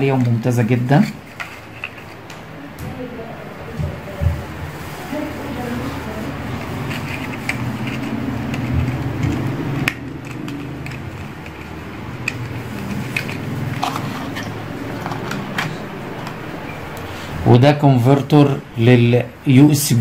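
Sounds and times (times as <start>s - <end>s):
steady low hum: 0.0s - 20.0s
plastic packaging crinkling: 4.6s - 15.9s.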